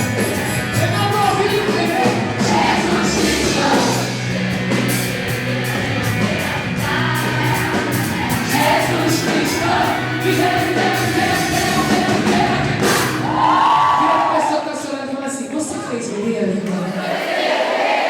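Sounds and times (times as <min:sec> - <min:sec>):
drumbeat: 0:00.0 - 0:14.0
voices singing together: 0:00.0 - 0:14.1, 0:16.9 - 0:18.0.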